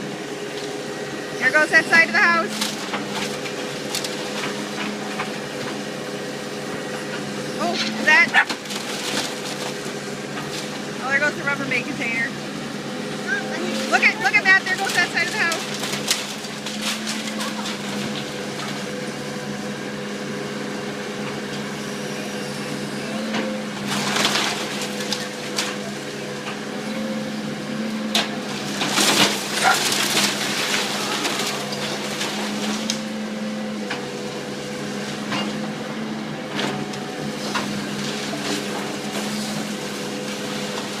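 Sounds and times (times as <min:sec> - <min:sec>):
steady machine hum: 0:00.0 - 0:41.0
wood cracking and splintering: 0:02.5 - 0:05.4, 0:07.6 - 0:10.8, 0:13.5 - 0:18.9, 0:23.9 - 0:25.8, 0:28.1 - 0:33.1.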